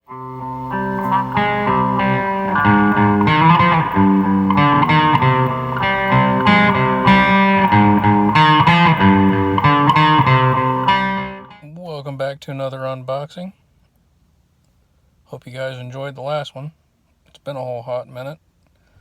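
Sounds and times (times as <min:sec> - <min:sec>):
electric guitar intro music: 0:00.0 - 0:11.6.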